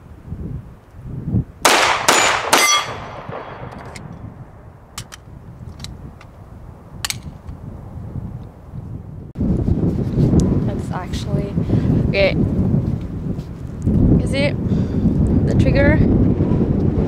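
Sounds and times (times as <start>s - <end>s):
pistol shots: 1.6s - 4.1s
metallic ring of steel target: 1.7s - 4.1s.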